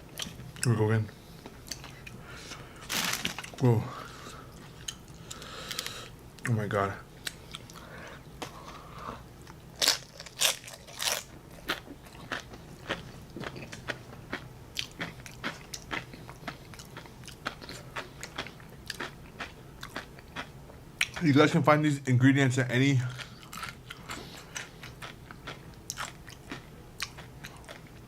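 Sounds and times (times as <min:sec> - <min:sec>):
tortilla chips crunching: 0:02.9 - 0:03.7, 0:09.8 - 0:19.2.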